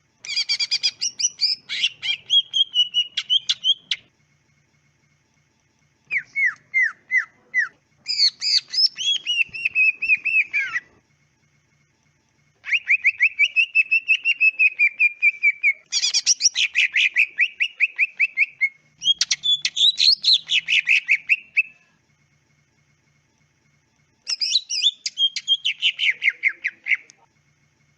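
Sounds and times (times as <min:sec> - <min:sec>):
bird singing rattling phrases: 0:00.3 - 0:04.1, 0:06.0 - 0:11.0, 0:12.6 - 0:21.8, 0:24.3 - 0:27.1.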